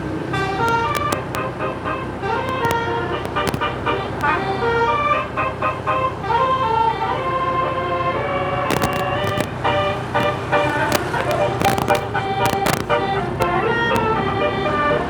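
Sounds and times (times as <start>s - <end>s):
low engine rumble: 0.0s - 15.0s
sharp clicks: 0.6s - 1.7s, 2.3s - 4.5s, 8.7s - 14.2s.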